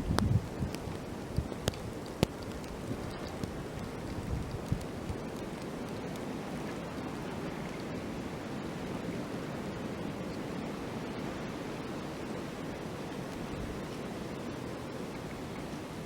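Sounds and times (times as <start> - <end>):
faint light ticks: 0.0 - 6.9.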